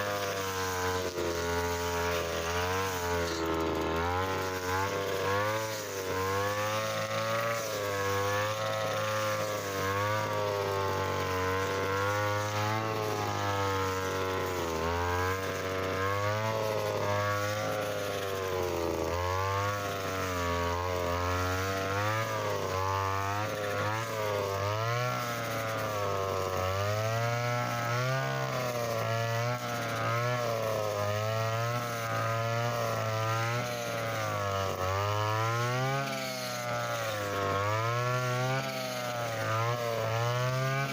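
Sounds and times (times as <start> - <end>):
brush cutter engine cutting grass: 0.0 - 40.9.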